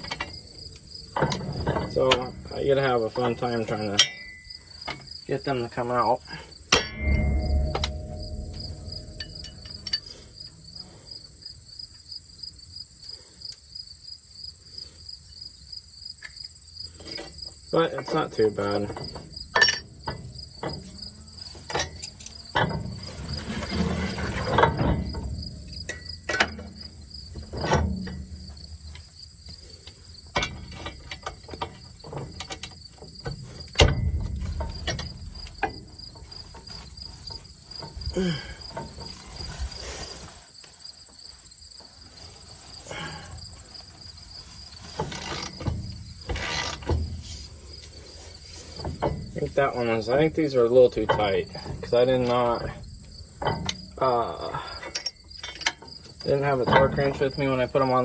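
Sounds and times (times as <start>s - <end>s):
crickets chirping: 0.0s - 58.0s
hand tools knocking on metal: 48.8s - 58.0s.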